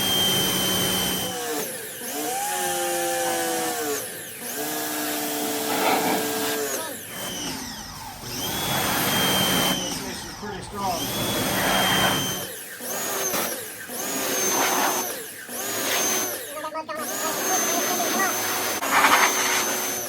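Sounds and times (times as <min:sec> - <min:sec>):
pressure washer motor running: 0:00.0 - 0:20.0.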